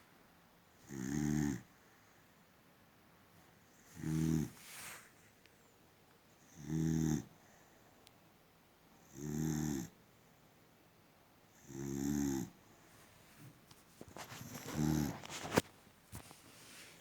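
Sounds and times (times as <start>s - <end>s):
dog snoring: 0.8s - 1.7s, 3.9s - 4.6s, 6.5s - 7.4s, 9.0s - 10.0s, 11.6s - 12.6s, 14.2s - 15.6s.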